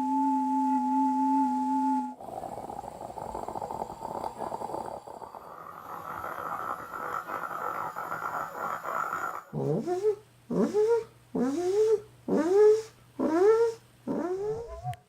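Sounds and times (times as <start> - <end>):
crackling sci-fi buzz: 2.4 - 9.6.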